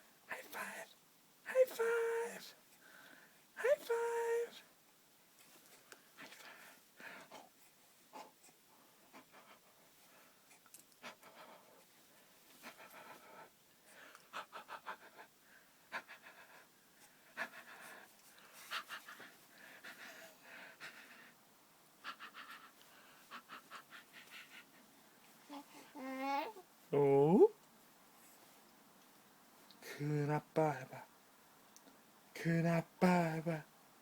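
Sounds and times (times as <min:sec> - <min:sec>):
baby panting: 0:12.6 - 0:21.4, 0:22.0 - 0:26.6.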